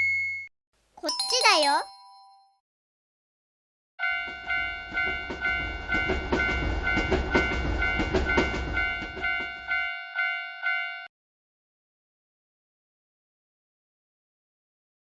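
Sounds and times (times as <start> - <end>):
railroad crossing bell ringing: 1.0 - 2.3, 4.0 - 11.1
train rumble and clacking wheels: 4.2 - 9.9.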